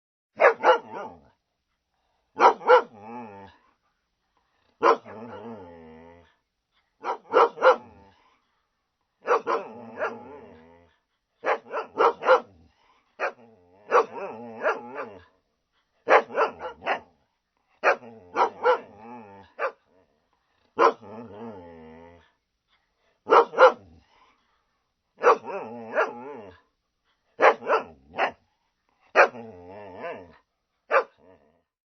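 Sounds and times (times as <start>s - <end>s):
dog barking: 0.4s - 1.3s, 2.4s - 3.0s, 4.8s - 5.4s, 7.0s - 8.0s, 9.2s - 10.4s, 11.4s - 12.6s, 13.2s - 15.2s, 16.0s - 17.1s, 17.8s - 18.9s, 19.6s - 19.8s, 20.8s - 21.1s, 23.2s - 23.9s, 25.2s - 26.3s, 27.4s - 28.4s, 29.1s - 29.4s, 30.9s - 31.2s.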